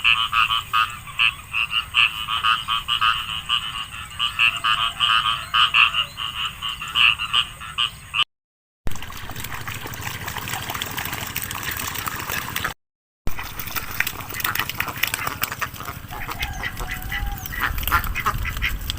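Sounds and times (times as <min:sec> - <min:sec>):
frogs croaking in chorus: 0:00.0 - 0:08.2, 0:13.6 - 0:18.7
ducks quacking: 0:00.0 - 0:08.3, 0:13.3 - 0:18.9
dense clicking and crackling: 0:17.4 - 0:18.9.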